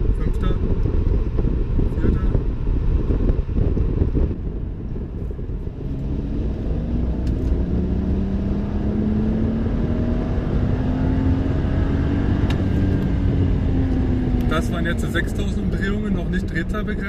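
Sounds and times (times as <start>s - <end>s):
car engine accelerating hard: 0.0s - 17.0s.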